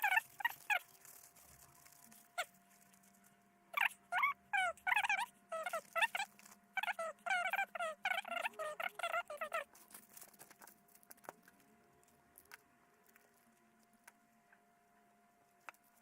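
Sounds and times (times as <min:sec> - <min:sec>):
rotary tool squeaky chirps: 0:03.8 - 0:09.7.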